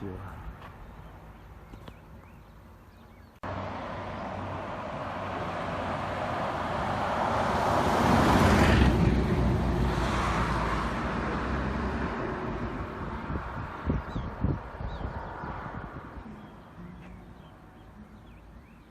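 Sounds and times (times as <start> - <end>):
vehicle driving past: 3.4 - 13.7.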